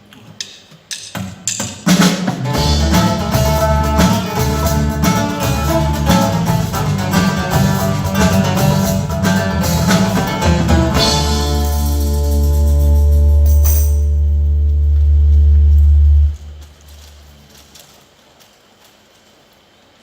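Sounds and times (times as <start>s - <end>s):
upbeat instrumental music: 1.9s - 14.2s.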